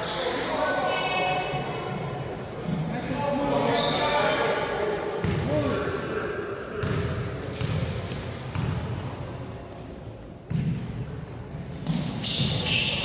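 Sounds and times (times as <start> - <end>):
basketball bouncing on court: 6.8 - 9.1.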